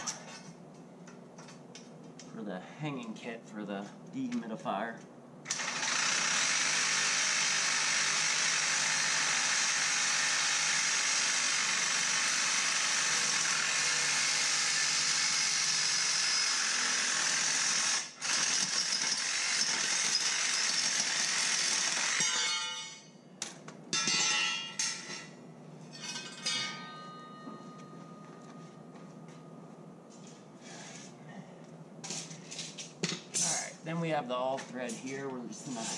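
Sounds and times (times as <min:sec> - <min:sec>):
metal pieces clanking and rattling: 0:23.9 - 0:27.3.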